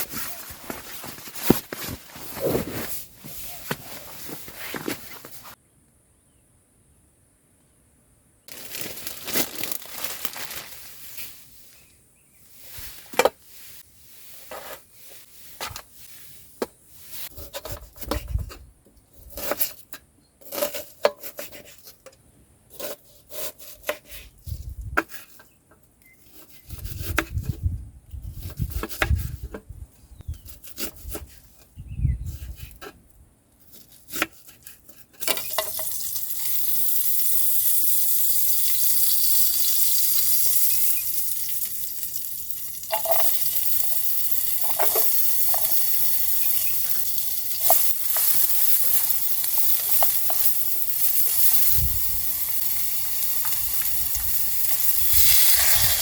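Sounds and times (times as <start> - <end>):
rustling and crinkling: 0.0 - 5.6, 8.5 - 22.2
frying pan sizzling: 35.3 - 56.0
utensils clicking and knocking: 42.8 - 51.8.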